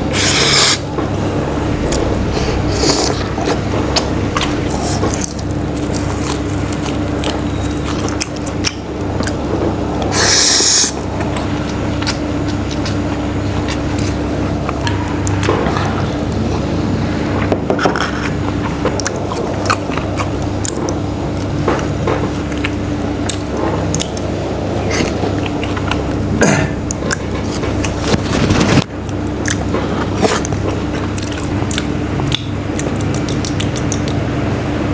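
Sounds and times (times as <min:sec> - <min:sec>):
rushing noise: 0:00.0 - 0:06.0
person biting and chewing food: 0:00.0 - 0:16.0, 0:18.0 - 0:34.2
steady low hum: 0:00.0 - 0:34.9.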